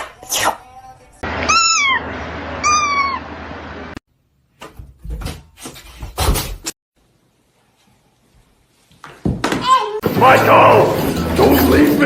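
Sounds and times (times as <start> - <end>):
cat meowing: 1.4 - 3.2.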